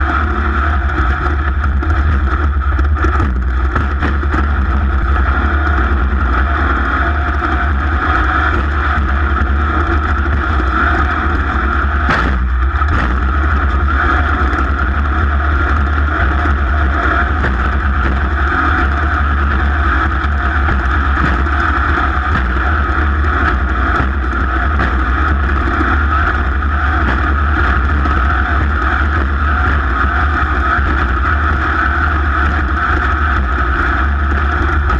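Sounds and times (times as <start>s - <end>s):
racing engine running: 0.0s - 34.9s
sharp knock: 12.1s - 13.3s.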